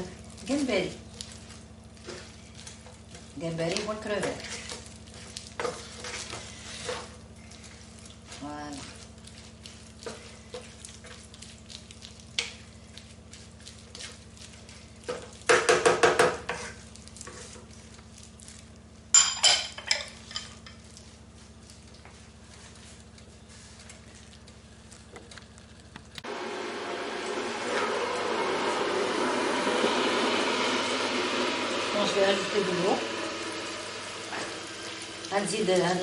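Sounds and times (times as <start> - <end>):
food sizzling in a pan: 30.4 - 36.0.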